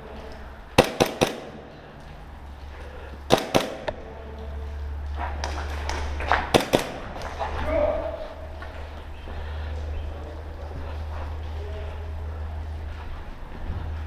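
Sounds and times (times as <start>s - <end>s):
steady low rumble: 0.0s - 14.0s
airsoft guns firing: 0.8s - 1.7s, 3.3s - 4.0s, 6.3s - 7.4s.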